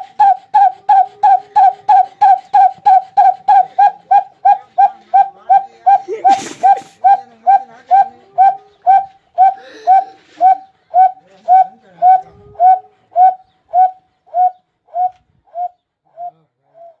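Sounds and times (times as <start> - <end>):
man imitating engine with mouth: 0.0 - 7.7.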